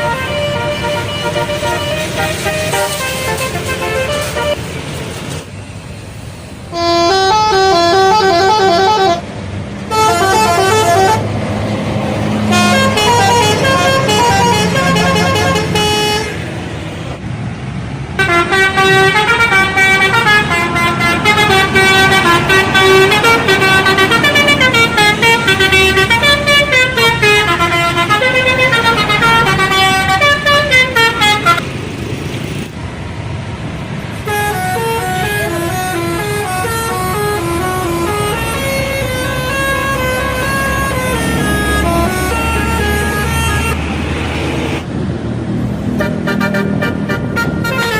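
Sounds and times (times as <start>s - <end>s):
musical air horns: 0.0s - 5.0s, 6.7s - 9.3s, 9.9s - 11.3s, 12.4s - 16.4s, 18.2s - 31.6s, 34.2s - 43.8s, 45.9s - 47.9s
bus engine running: 0.0s - 47.9s.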